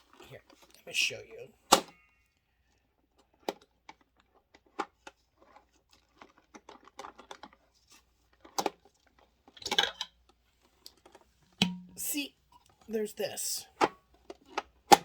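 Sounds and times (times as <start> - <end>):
sharp knocks: 11.6 - 12.0.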